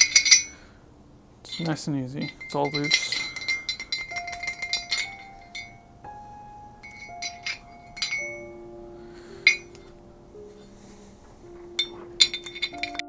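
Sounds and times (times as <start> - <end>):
metal clinks on axe head: 0.0 - 0.6, 1.4 - 5.9, 6.8 - 8.6, 9.2 - 10.0, 11.6 - 13.0
soft background music: 1.0 - 13.0.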